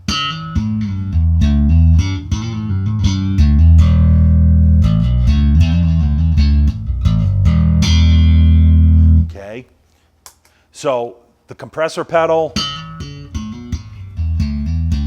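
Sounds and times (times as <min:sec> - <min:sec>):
slap bass guitar: 0:00.0 - 0:09.5, 0:12.4 - 0:15.0.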